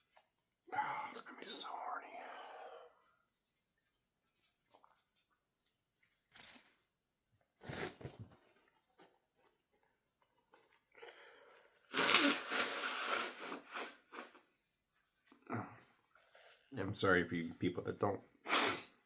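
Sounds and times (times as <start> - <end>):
hard nose blowing: 11.9 - 14.4, 18.4 - 19.0.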